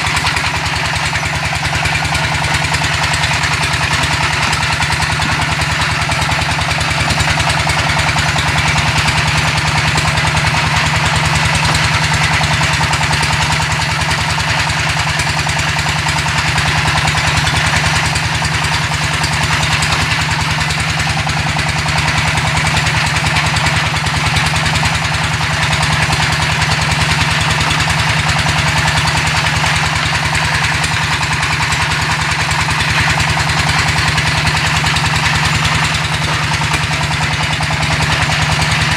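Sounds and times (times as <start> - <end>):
machine rattling fast: 0.0 - 38.9.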